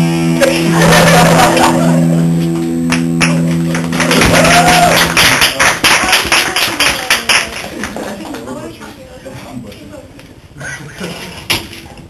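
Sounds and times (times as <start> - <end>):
guitar chords strummed: 0.0 - 5.2.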